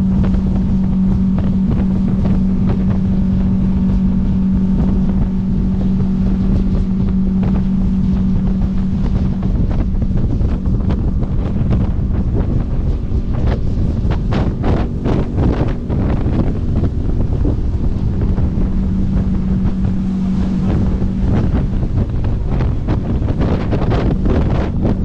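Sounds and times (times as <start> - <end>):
boat engine humming: 0.0 - 25.0
wind buffeting microphone: 0.0 - 25.0.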